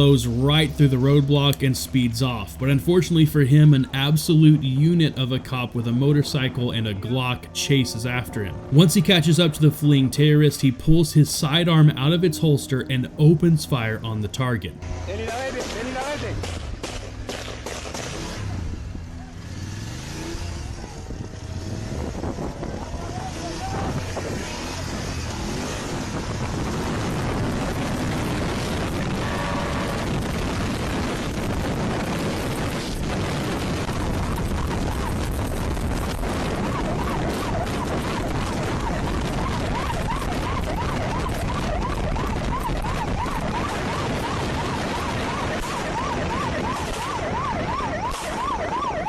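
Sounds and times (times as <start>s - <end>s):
motorcycle engine: 14.7s - 49.0s
heavy wind: 20.4s - 49.0s
siren yelping: 22.1s - 49.0s.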